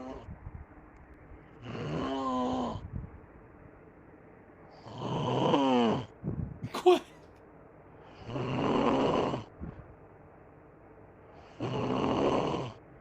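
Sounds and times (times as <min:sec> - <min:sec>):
faint steady hum: 0:00.0 - 0:13.0
man snoring: 0:01.6 - 0:02.8, 0:04.8 - 0:06.1, 0:08.2 - 0:09.5, 0:11.5 - 0:12.8.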